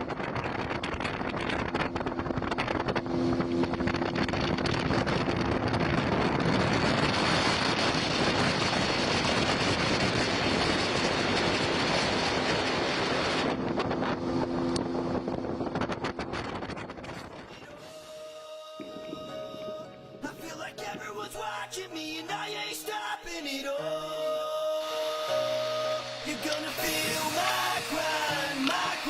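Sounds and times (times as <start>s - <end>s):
wind noise on microphone: 0.0s - 20.3s, 25.3s - 29.0s
motorboat engine humming: 0.0s - 21.6s, 23.9s - 29.0s
water rushing: 23.8s - 29.0s.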